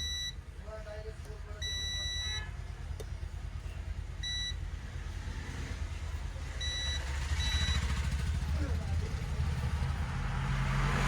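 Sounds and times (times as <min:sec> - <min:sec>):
multimeter beeps: 0:00.0 - 0:00.4, 0:01.6 - 0:02.4, 0:04.2 - 0:04.6, 0:06.6 - 0:07.8.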